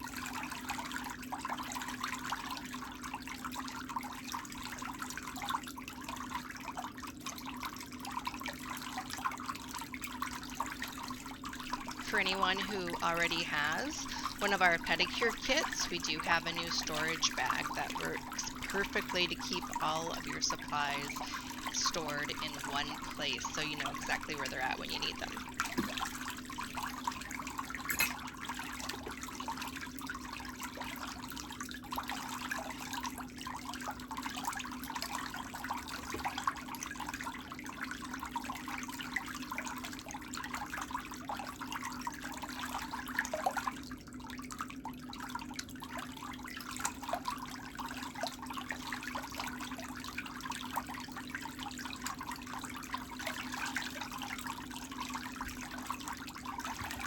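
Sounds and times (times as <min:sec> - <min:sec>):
water trickling and splashing: 0:00.0 - 0:57.0
steady low hum: 0:11.1 - 0:27.0.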